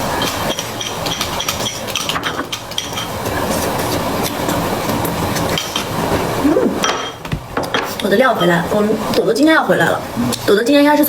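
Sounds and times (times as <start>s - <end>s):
chopsticks clicking against dishes: 0.2s - 3.2s.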